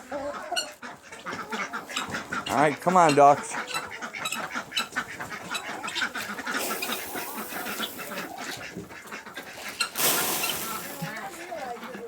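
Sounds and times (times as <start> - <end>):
ducks quacking: 0.0 - 12.0
loud rushing hiss: 10.0 - 11.0.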